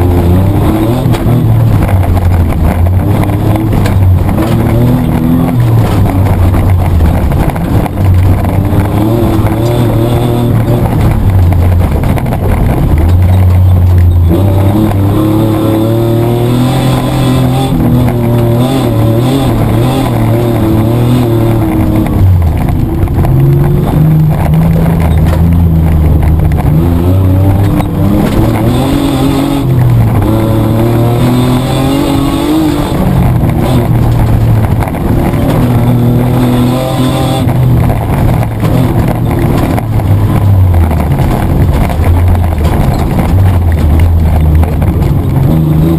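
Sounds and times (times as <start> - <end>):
car engine revving: 0.0 - 45.9
gravel noise: 0.0 - 45.9
rattle: 1.0 - 15.0, 19.5 - 26.8, 31.9 - 36.6, 37.4 - 45.9.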